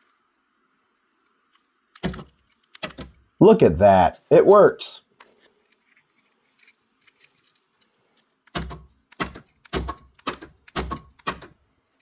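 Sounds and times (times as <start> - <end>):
door lock actuator clunks: 2.0 - 3.2, 8.5 - 11.5.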